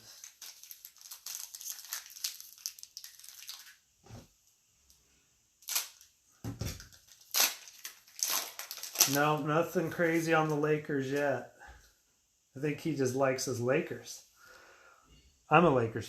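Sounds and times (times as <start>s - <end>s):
foil wrapper crinkling and tearing: 0.0s - 3.9s, 5.6s - 10.5s
handling rustles and thumps: 6.4s - 7.1s.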